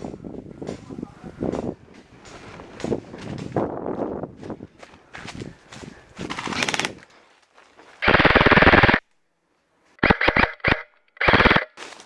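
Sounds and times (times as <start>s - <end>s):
airsoft guns firing bursts: 8.0s - 9.0s, 10.0s - 11.7s.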